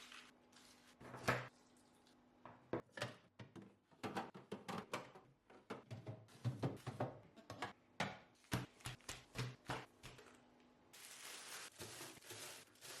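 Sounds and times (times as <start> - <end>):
food containers knocking and clicking: 2.5 - 10.3.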